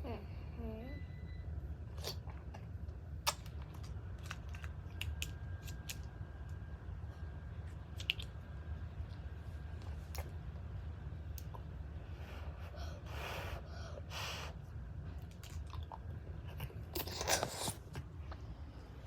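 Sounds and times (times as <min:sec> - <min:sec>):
steady low hum: 0:00.0 - 0:19.0
wet mouth clicks and crunches: 0:03.2 - 0:06.1, 0:08.0 - 0:08.4.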